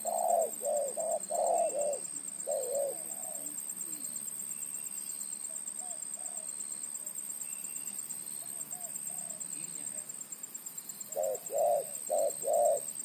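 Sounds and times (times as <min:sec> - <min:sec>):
dove cooing: 0:00.0 - 0:04.2, 0:05.5 - 0:06.5, 0:08.4 - 0:10.1, 0:11.0 - 0:13.0.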